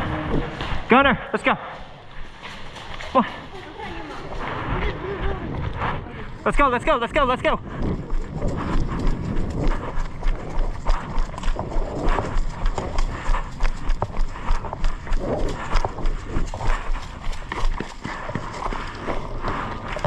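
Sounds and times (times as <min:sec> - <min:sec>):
running footsteps: 0:00.0 - 0:20.0.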